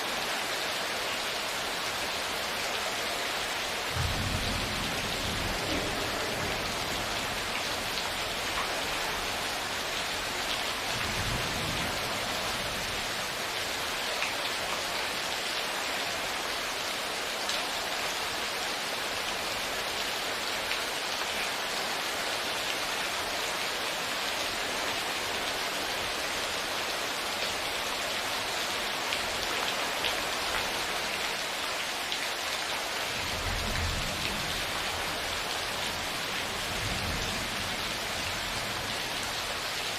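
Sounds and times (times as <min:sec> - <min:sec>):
steady rain falling: 0:00.0 - 0:39.9
distant thunder rumble: 0:03.9 - 0:08.5.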